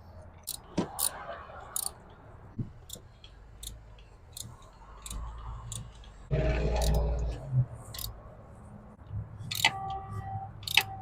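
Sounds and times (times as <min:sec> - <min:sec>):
ratchet wrench clicking: 0:00.4 - 0:02.0, 0:02.8 - 0:06.1, 0:07.9 - 0:08.2, 0:09.5 - 0:09.8, 0:10.6 - 0:10.9.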